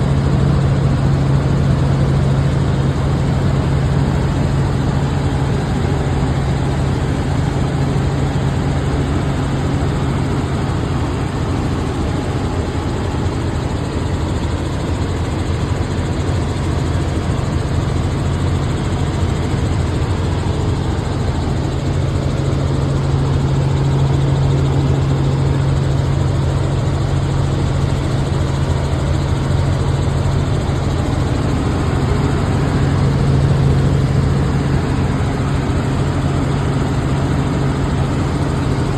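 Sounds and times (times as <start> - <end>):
helicopter engine and rotor drone: 0.0 - 38.9.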